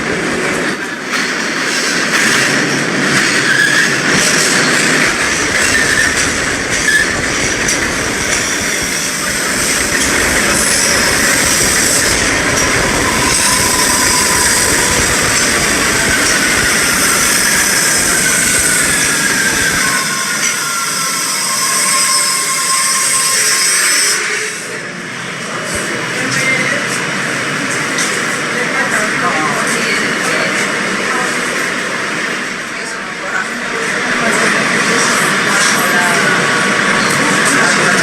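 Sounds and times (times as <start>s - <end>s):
subway train rumbling on rails: 0.0s - 38.0s
high wheel squeals: 3.3s - 7.4s, 8.2s - 24.4s.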